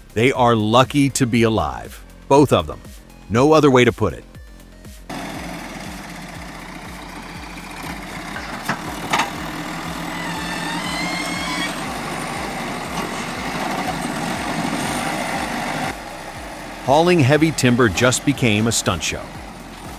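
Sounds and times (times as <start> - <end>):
truck engine running: 4.2 - 19.9
faint rising whine: 5.1 - 19.9.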